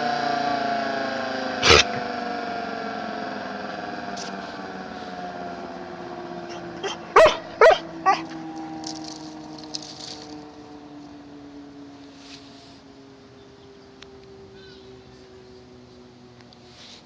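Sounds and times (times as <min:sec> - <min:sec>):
tornado siren winding down: 0:00.0 - 0:17.0
dog barking: 0:01.6 - 0:02.0, 0:06.5 - 0:08.4.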